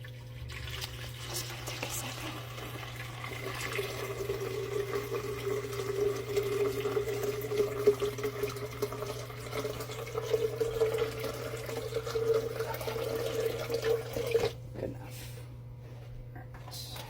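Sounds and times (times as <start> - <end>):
water pouring into reservoir: 0.0 - 14.6.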